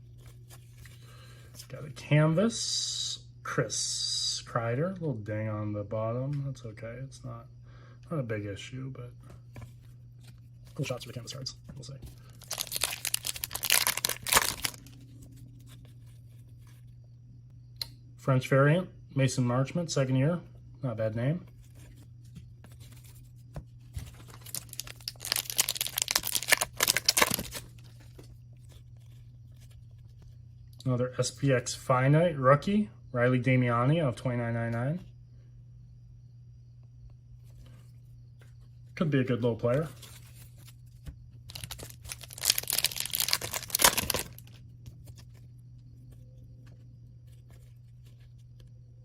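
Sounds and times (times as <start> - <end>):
card pack wrapper tearing and crinkling: 12.1 - 15.0, 24.0 - 28.2, 41.5 - 45.2.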